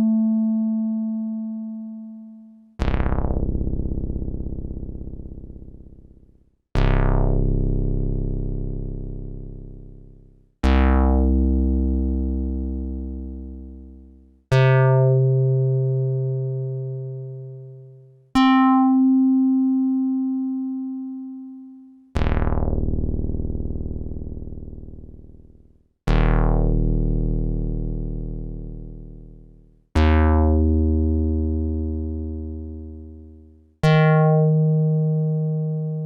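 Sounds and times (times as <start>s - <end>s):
synthesizer bass notes: 30.0s - 33.2s.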